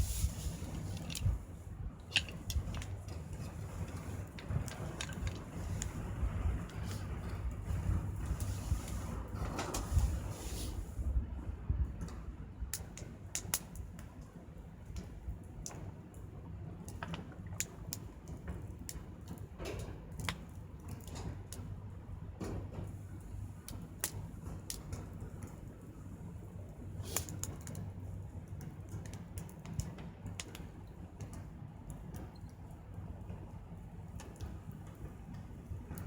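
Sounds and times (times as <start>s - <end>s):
wood fire crackling: 0.0s - 11.0s, 22.6s - 26.0s, 26.6s - 32.8s, 33.5s - 36.0s
low steady hum: 0.0s - 13.0s.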